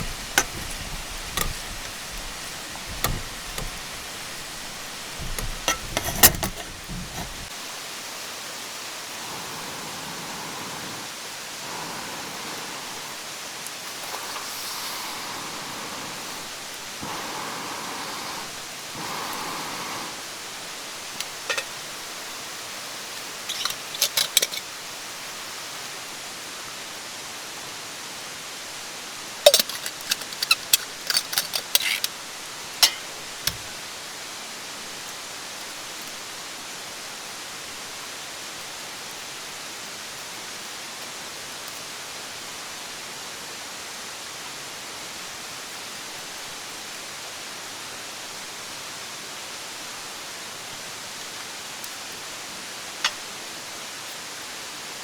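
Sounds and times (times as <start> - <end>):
short clicks and knocks: 0.0 - 7.5.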